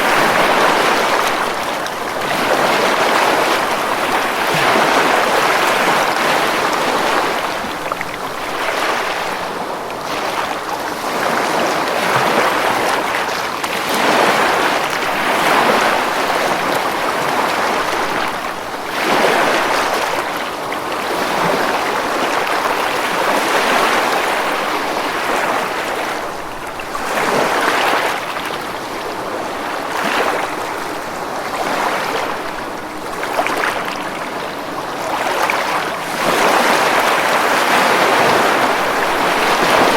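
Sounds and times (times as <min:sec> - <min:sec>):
ocean waves breaking on beach: 0:00.0 - 0:39.9.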